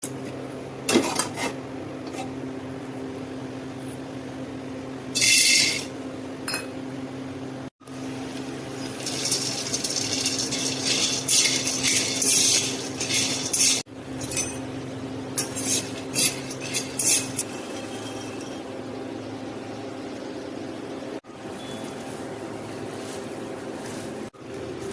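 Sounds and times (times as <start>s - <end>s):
utensils clinking against pan: 8.9s - 14.7s, 15.4s - 18.6s.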